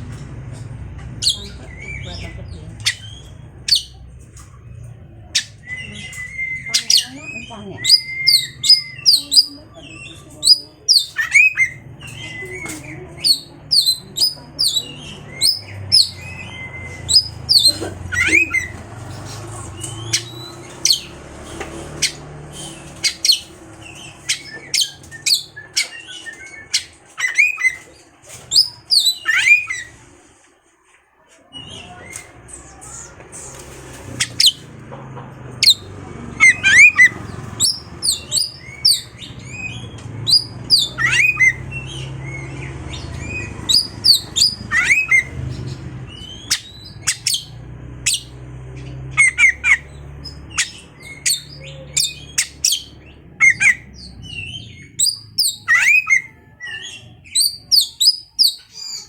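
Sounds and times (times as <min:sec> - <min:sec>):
bird singing loudly: 0:01.2 - 0:04.0, 0:05.4 - 0:18.8, 0:22.0 - 0:27.8, 0:35.6 - 0:59.0.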